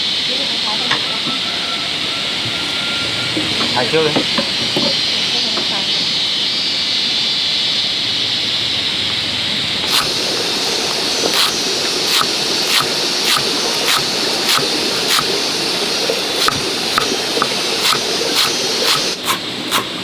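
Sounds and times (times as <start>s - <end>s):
water rushing: 7.8s - 20.0s.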